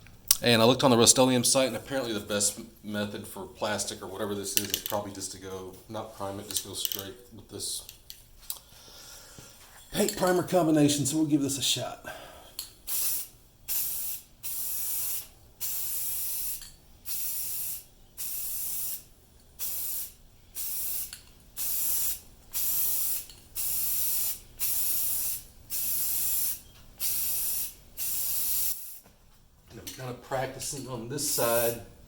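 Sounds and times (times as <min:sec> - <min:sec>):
aerosol paint spraying: 0:12.9 - 0:19.0, 0:19.6 - 0:29.0.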